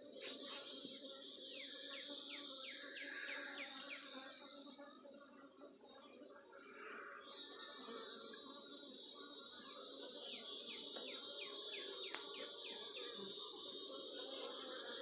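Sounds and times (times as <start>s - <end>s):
insects chorus: 0.0s - 15.0s.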